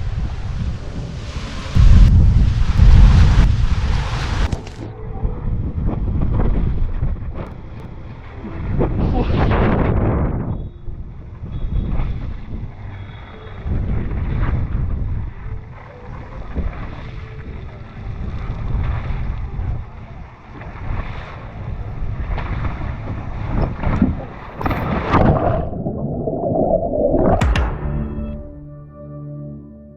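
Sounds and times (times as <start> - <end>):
water rushing down waterslide: 0.0 - 4.9
wind buffeting microphone: 0.0 - 27.4.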